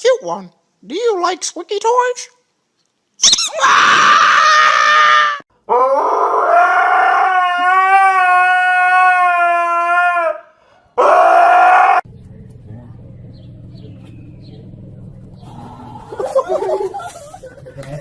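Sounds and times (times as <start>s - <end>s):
dog howling: 3.5s - 12.1s.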